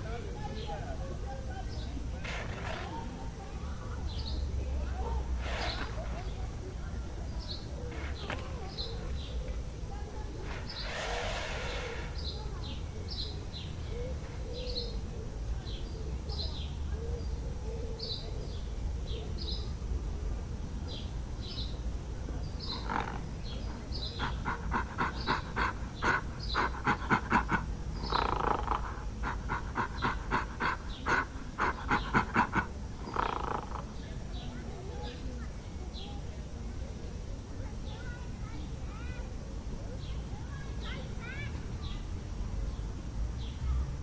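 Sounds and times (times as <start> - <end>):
animal pulsed calls: 0.0 - 14.4, 22.7 - 33.8
small birds chirping: 0.0 - 14.7, 22.5 - 34.0.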